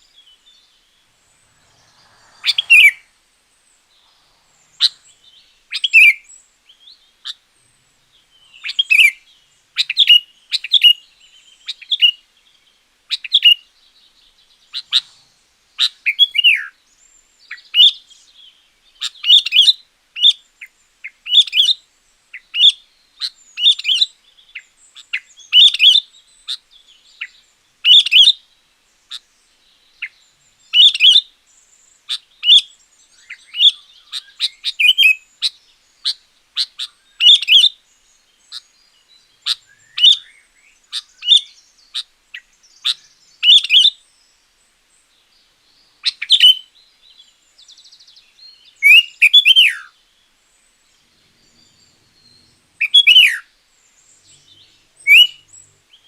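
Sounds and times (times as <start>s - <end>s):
bulbul singing: 0.0s - 12.2s, 32.0s - 44.0s, 45.4s - 56.0s.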